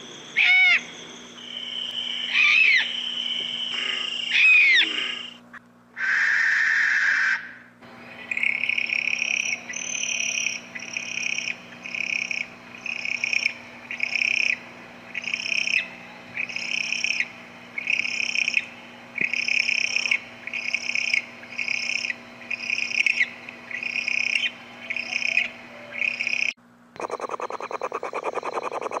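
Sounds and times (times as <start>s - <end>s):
owl screeching: 0.4s - 5.4s, 6.0s - 7.7s, 23.0s - 26.5s
noisy sound: 27.0s - 29.0s.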